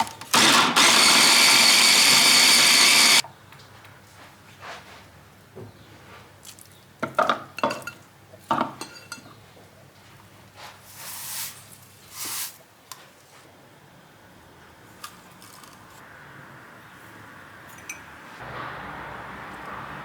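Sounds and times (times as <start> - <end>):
dishes and utensils clinking: 7.2 - 9.4.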